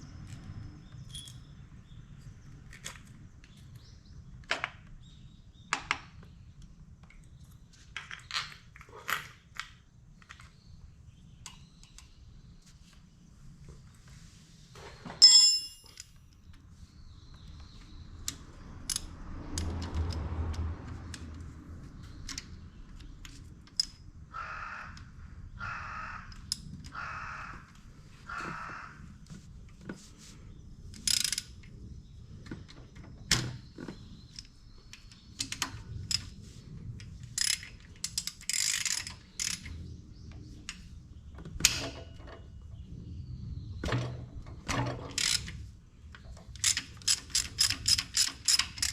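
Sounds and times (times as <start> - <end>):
hand tools clinking on engine parts: 15.2 - 16.2.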